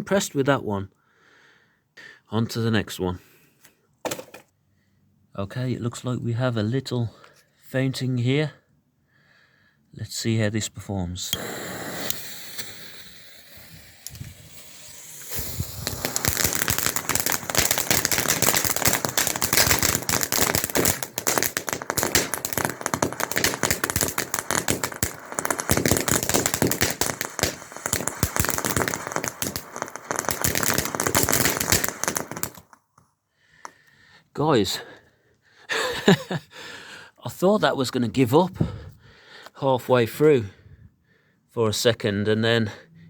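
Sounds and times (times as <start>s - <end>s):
firework fountain hissing and crackling: 11.3s - 32.8s.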